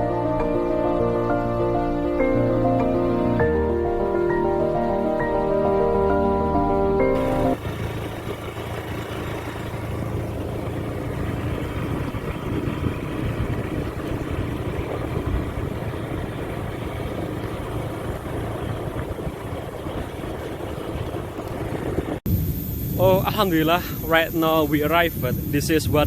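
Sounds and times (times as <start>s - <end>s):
vehicle engine rumbling: 0.0s - 26.0s.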